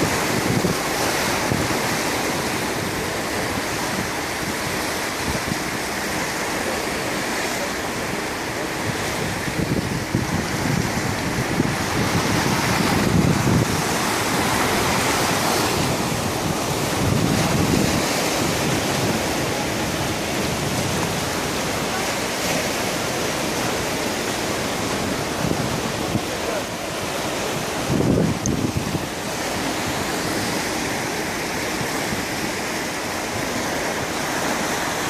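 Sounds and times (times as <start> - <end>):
wind buffeting microphone: 0.0 - 5.8, 8.8 - 22.0, 27.5 - 30.7
sea waves washing in: 0.0 - 35.0.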